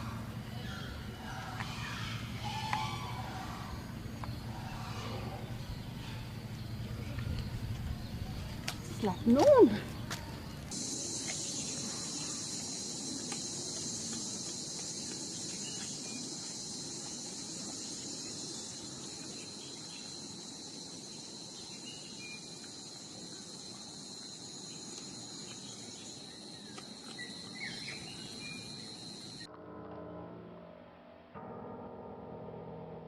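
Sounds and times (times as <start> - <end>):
low rumble: 0.0 - 9.0
insects shrilling: 10.7 - 29.5.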